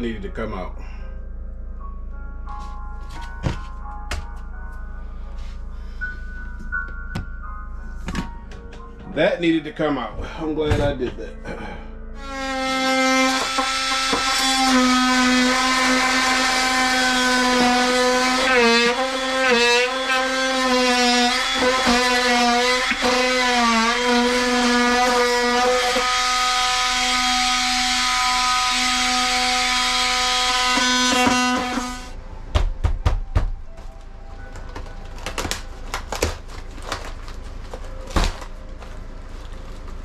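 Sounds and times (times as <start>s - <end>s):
electric sander whining: 12.2s - 32.1s.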